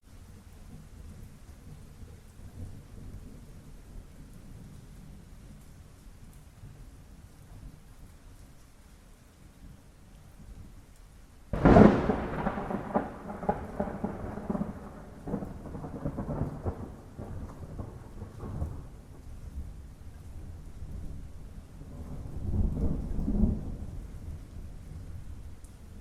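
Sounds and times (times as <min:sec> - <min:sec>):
rain hissing: 0:00.0 - 0:26.0
thunder crack and rumble: 0:11.5 - 0:25.6.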